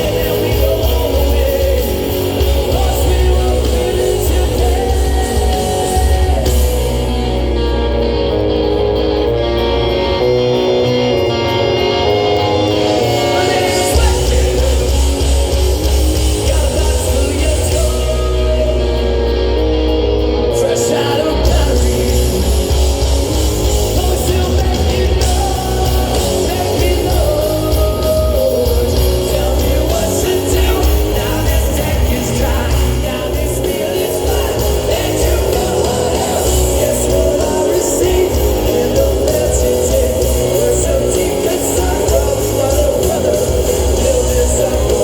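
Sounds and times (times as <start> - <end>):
person singing: 0.0 - 8.4, 10.2 - 19.7, 20.4 - 45.0
live rock band playing: 0.0 - 45.0.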